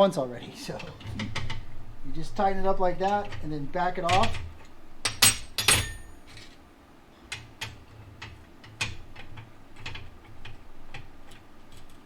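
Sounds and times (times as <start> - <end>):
metallic clanks: 0.8 - 6.5.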